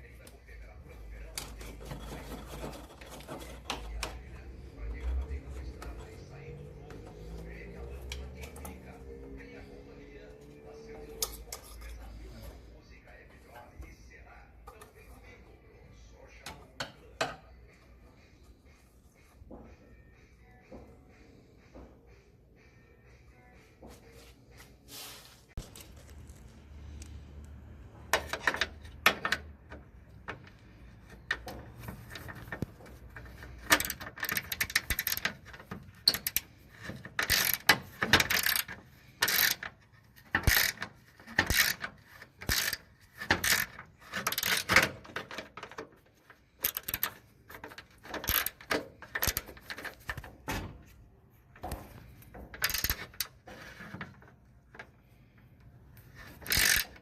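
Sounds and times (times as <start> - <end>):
ratchet wrench clicking: 33.2 - 45.0, 46.6 - 50.0, 52.5 - 53.4, 56.2 - 57.0.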